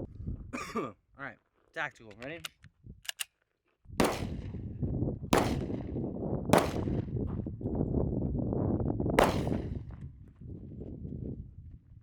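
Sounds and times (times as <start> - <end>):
gunshots: 4.0 - 4.5, 5.4 - 5.9, 6.6 - 7.0, 9.2 - 9.7.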